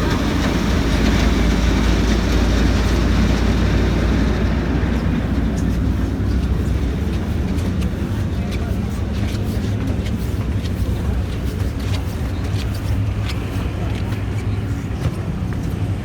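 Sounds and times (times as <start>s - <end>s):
boat engines rumbling: 0.0s - 16.0s.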